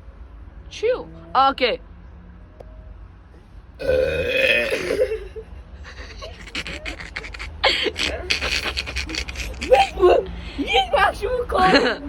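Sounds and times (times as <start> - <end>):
boy belching: 3.8 - 5.3.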